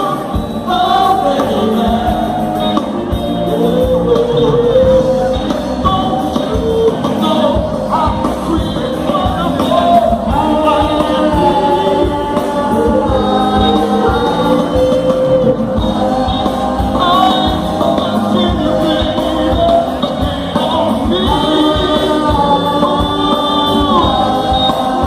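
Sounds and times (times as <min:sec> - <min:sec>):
lead singer singing: 0:00.0 - 0:25.0
live band playing: 0:00.0 - 0:25.0
drum beat: 0:05.3 - 0:25.0.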